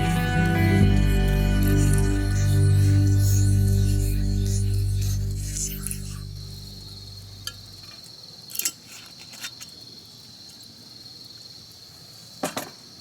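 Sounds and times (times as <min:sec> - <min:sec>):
background music: 0:00.0 - 0:07.4
crickets chirring: 0:00.0 - 0:13.0.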